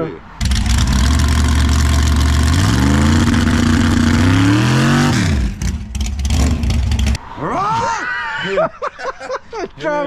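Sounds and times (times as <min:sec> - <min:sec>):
car engine revving: 0:00.4 - 0:07.2.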